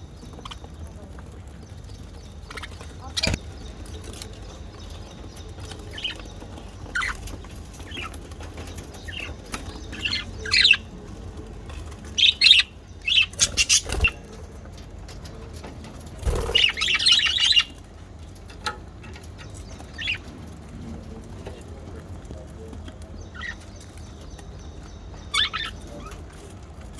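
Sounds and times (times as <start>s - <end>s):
budgerigars chirping and squawking: 0.1s - 21.7s, 23.0s - 26.6s
wings flapping: 13.4s - 14.4s, 16.0s - 17.7s.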